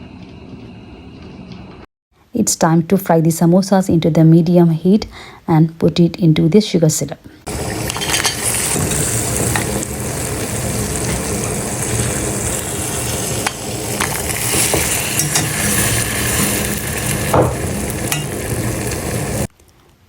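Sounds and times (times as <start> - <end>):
food deep-frying in oil: 7.5 - 19.5.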